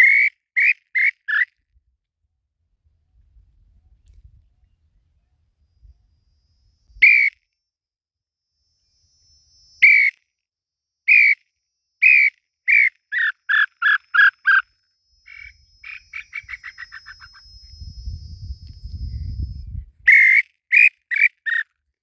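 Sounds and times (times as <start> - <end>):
bird whistling falling notes: 7.0 - 7.4, 9.8 - 10.2, 11.1 - 11.4, 12.0 - 14.6, 15.2 - 21.6.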